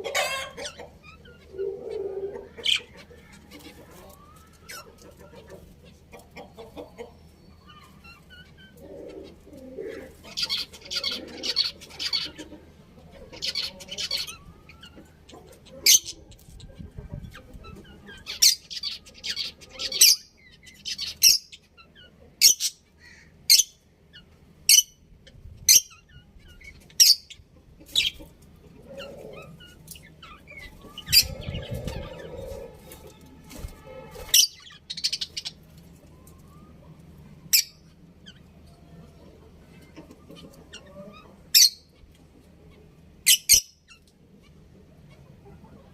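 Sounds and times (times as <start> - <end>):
budgerigars chirping: 10.2 - 12.6, 17.4 - 25.0.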